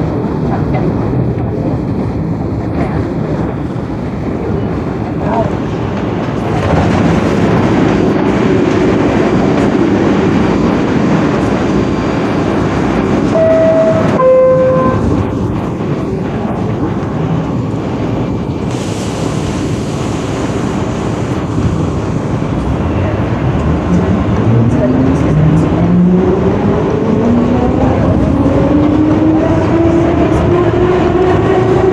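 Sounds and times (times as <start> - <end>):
subway car interior rumble: 0.0 - 31.9
two-note falling door chime: 13.4 - 15.2.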